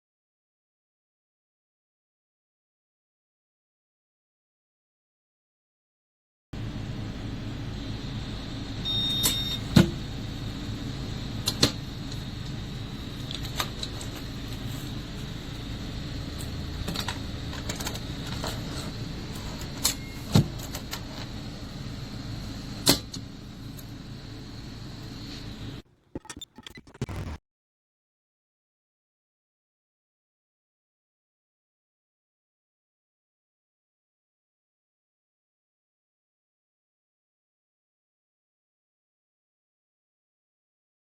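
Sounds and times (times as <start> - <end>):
short electronic beep: 8.8 - 9.6, 26.2 - 27.4.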